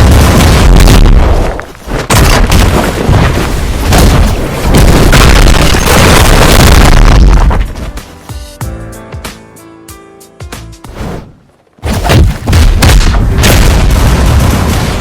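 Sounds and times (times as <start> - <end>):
loud distorted booming noise: 11.8 - 15.0.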